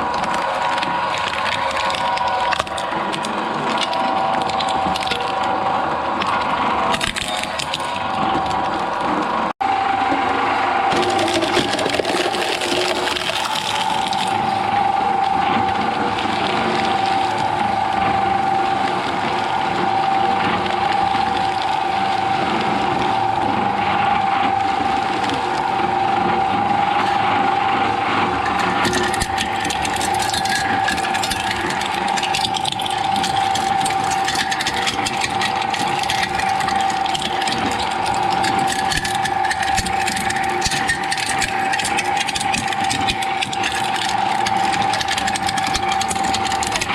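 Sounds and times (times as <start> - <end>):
shredder whining and grinding: 0.0 - 46.9
dense crackling: 28.2 - 46.9.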